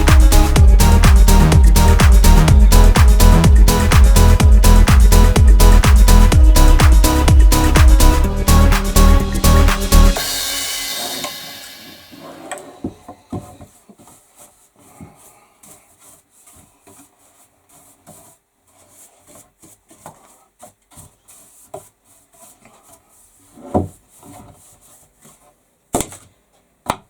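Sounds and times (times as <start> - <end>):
sandpaper rubbing on wood: 15.6 - 25.5.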